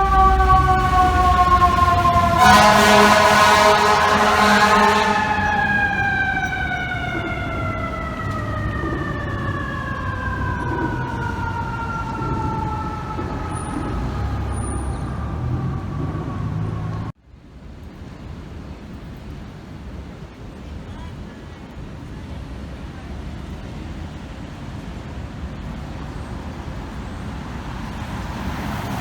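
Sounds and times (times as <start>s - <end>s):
mechanical siren winding down: 0.0s - 2.9s, 4.7s - 17.1s
loud horn blast: 0.0s - 7.0s
truck engine rumbling: 0.0s - 17.2s.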